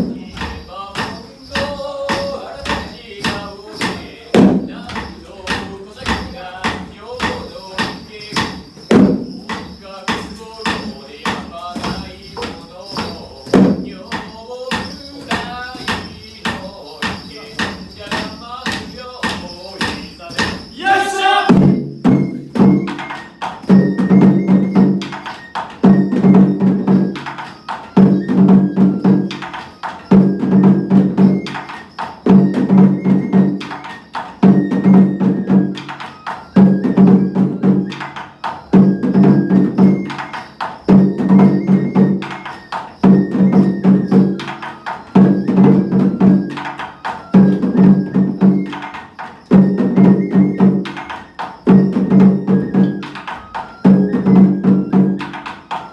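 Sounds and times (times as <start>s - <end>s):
drum beats: 0.0s - 55.9s
festival dance music: 20.7s - 21.7s.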